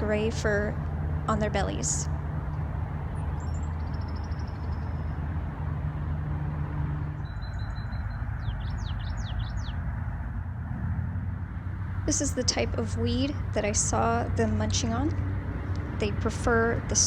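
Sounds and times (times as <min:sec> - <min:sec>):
low rumble of traffic: 0:00.0 - 0:17.0
small songbirds calling: 0:03.2 - 0:05.3, 0:07.2 - 0:09.8.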